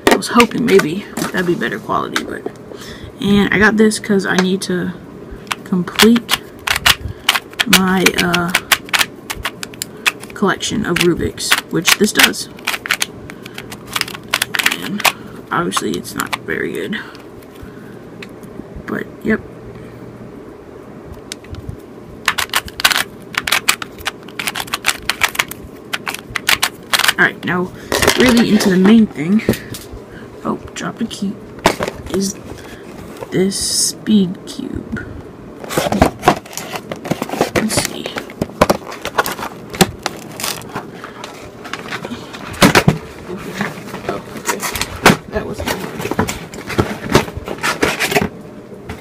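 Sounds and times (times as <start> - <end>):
hard plastic clicking and crackling: 5.5 - 16.4, 22.3 - 27.2
plastic packaging being pried open: 22.3 - 27.2, 38.5 - 40.8.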